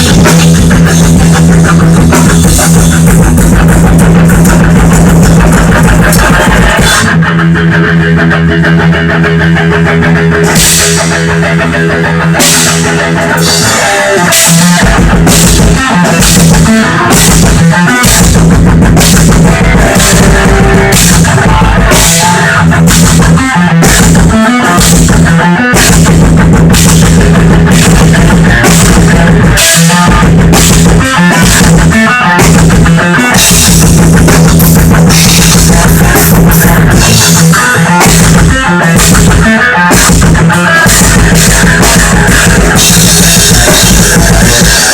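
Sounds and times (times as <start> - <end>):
distorted electric guitar: 0.0 - 44.9
drum kit and cymbals: 0.0 - 44.9.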